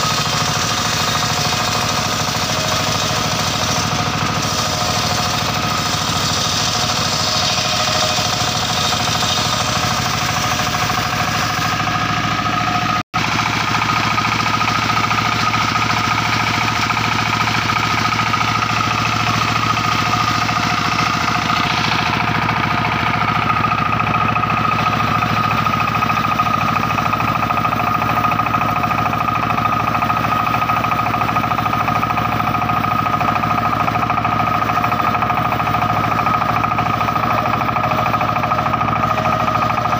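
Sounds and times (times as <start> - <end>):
circular saw blade whine: 0.0 - 39.9.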